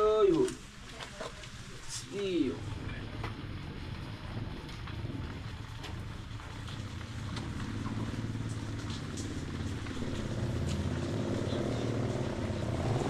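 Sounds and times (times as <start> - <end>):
motor vehicle engine running: 2.6 - 13.0.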